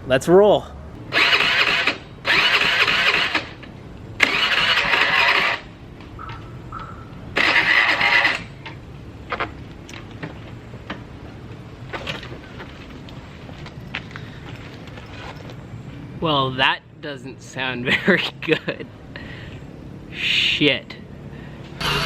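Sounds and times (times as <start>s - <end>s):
scooter starter cranking: 1.1s - 5.8s, 6.8s - 8.8s.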